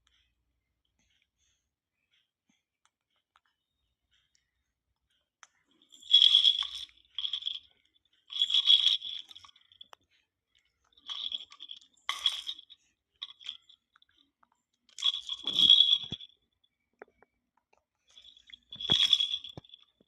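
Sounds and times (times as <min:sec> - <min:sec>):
rattle shaken: 0:05.9 - 0:07.7, 0:08.3 - 0:09.8, 0:11.0 - 0:13.8, 0:15.0 - 0:16.3, 0:18.1 - 0:20.0.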